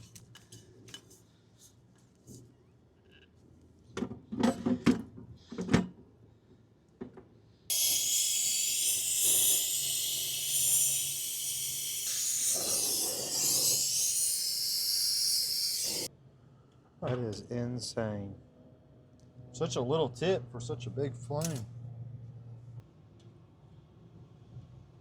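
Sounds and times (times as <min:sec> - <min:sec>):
torch burning with loud hiss: 0:07.7 - 0:16.1.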